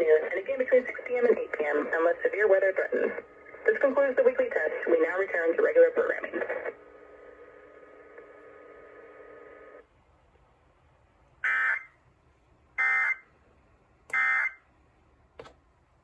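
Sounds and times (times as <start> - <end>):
steady hum: 0.0 - 16.0.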